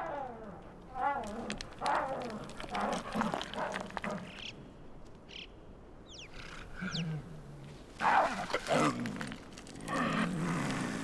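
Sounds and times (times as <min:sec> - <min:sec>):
snow leopards snarling and growling: 0:06.3 - 0:11.0.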